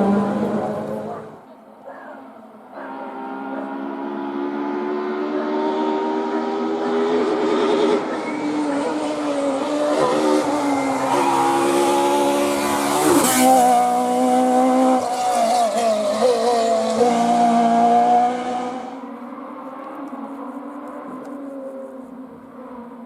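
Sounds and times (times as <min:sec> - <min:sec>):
rally car engine revving: 0:00.0 - 0:01.4, 0:02.8 - 0:19.0.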